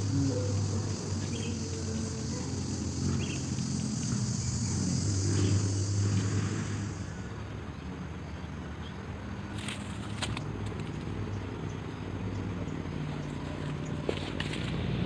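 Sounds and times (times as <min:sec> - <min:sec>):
insect buzzing: 0:00.0 - 0:07.8.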